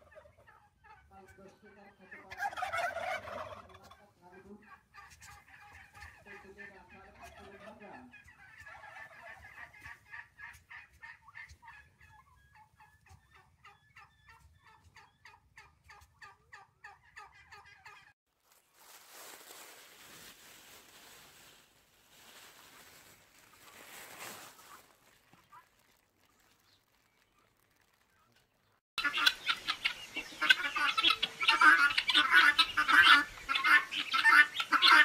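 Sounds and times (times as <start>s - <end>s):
faint outdoor hiss: 26.0s - 35.0s
chicks peeping: 27.9s - 35.0s.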